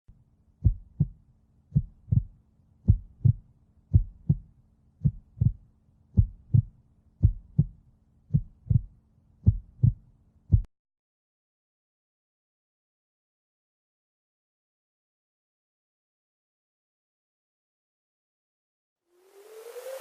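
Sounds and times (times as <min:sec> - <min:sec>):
faint low hum: 0:00.1 - 0:10.7
heartbeat thumps: 0:00.6 - 0:05.6, 0:06.2 - 0:10.7.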